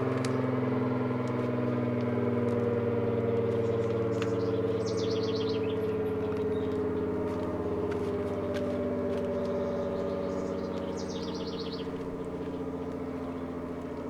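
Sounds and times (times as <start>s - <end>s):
warning siren: 0.0s - 14.0s
bird chirping: 2.6s - 14.0s.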